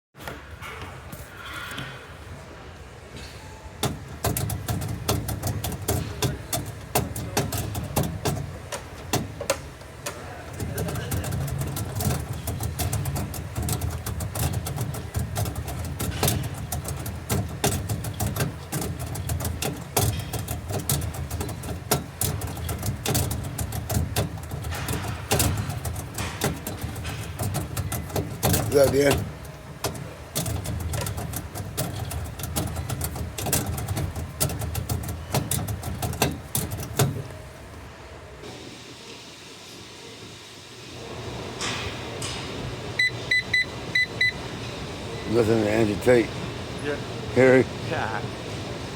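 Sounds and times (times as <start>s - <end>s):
irregular clicks and knocks: 3.8s - 37.4s.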